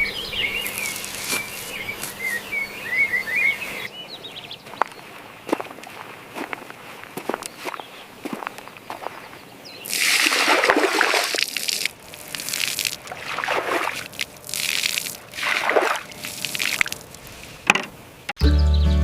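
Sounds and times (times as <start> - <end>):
water sloshing and splashing: 4.7 - 17.5.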